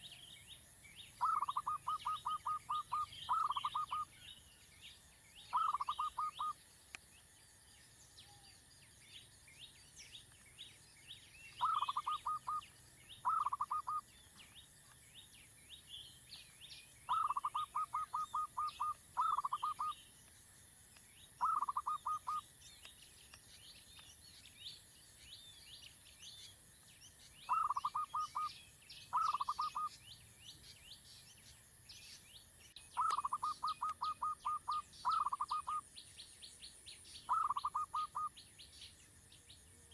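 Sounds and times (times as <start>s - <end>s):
bird clucking notes: 1.2s - 4.0s, 11.6s - 12.6s, 13.2s - 14.0s, 17.1s - 19.9s, 21.4s - 22.4s, 33.0s - 35.8s, 37.3s - 38.3s.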